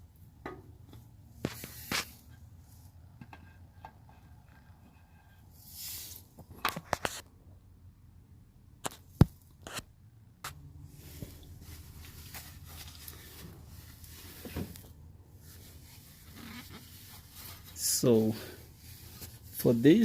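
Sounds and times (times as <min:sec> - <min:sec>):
faint handling sounds: 0:00.8 - 0:07.3, 0:10.5 - 0:20.0.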